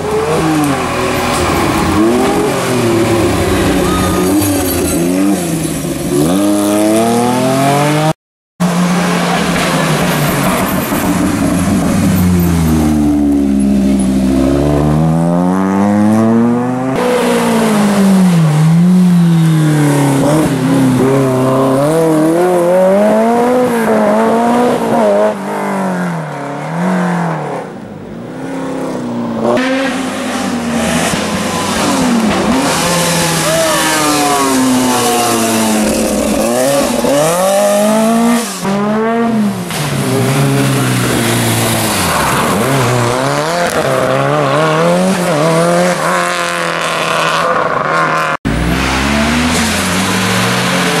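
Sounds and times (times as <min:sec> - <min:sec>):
rally car engines revving: 0:00.0 - 0:51.0.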